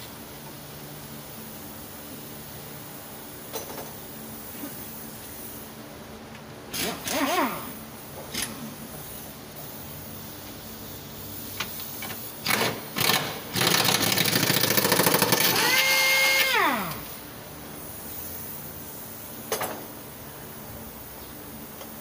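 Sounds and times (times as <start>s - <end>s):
motor rattling and winding down: 6.7s - 7.8s, 12.4s - 17.1s.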